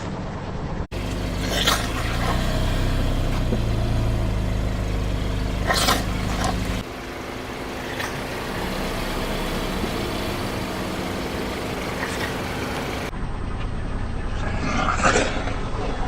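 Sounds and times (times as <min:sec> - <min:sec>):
tyre noise: 0:00.9 - 0:06.9
car engine running at low revs: 0:00.9 - 0:14.3.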